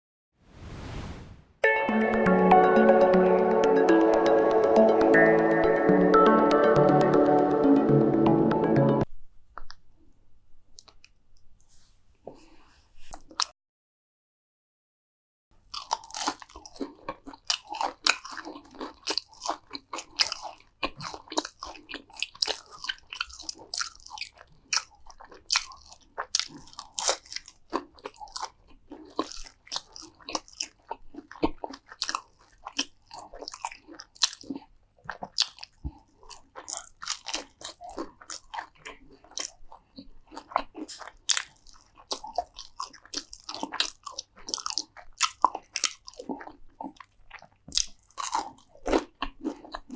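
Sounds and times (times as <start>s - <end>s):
person chewing crunchy food: 12.3s - 13.5s, 15.6s - 49.9s.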